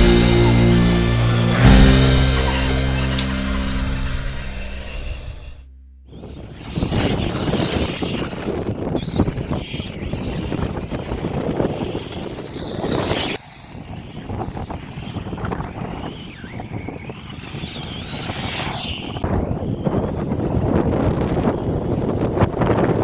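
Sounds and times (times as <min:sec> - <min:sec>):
electric motor whining: 0:06.1 - 0:23.0
wind noise on microphone: 0:06.1 - 0:23.0.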